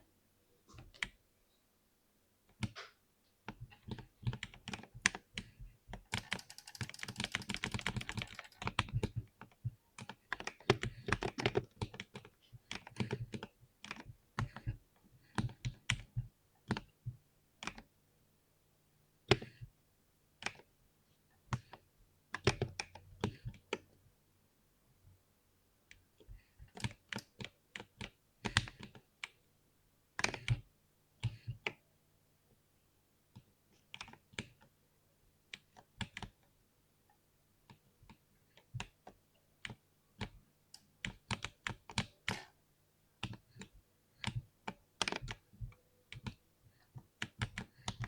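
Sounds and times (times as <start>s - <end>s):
keyboard typing: 3.9s - 9.2s.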